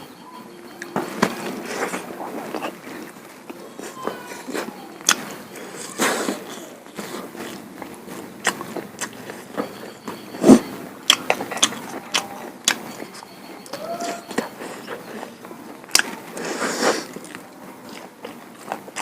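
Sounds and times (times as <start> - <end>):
wet chewing: 0.8 - 19.0
lip smacks and mouth clicks: 8.4 - 9.4, 15.9 - 16.2.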